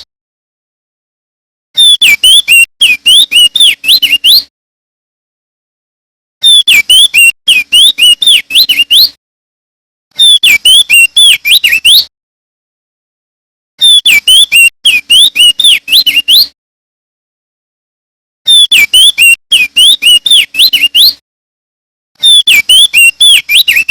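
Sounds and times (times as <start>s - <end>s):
bird singing whistled notes: 1.8s - 4.5s, 6.4s - 9.2s, 10.2s - 12.1s, 13.8s - 16.6s, 18.5s - 21.2s, 22.2s - 23.9s.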